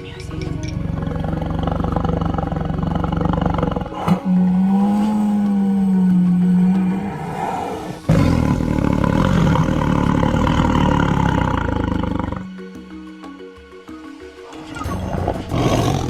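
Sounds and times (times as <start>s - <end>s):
background music: 0.0s - 16.0s
tiger roaring: 0.9s - 12.5s, 15.0s - 16.0s.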